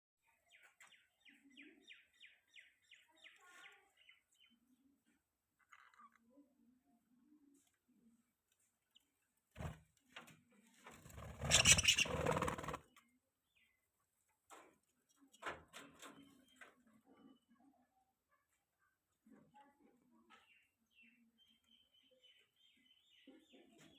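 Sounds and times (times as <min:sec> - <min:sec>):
budgies chattering: 0:11.4 - 0:12.6.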